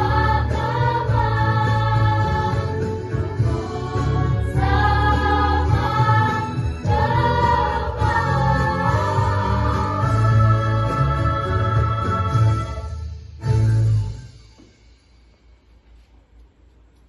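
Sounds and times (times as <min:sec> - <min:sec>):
choir singing long chords: 0:00.0 - 0:13.0.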